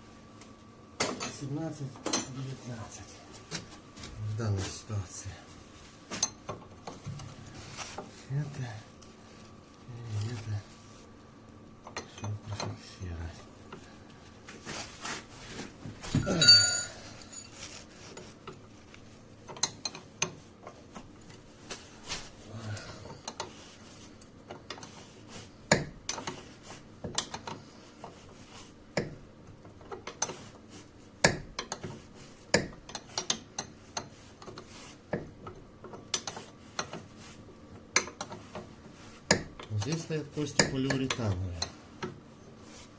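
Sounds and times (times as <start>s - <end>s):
metal hand tools clinking: 16.2s - 17.6s
ringing metallic clank: 16.2s - 17.6s.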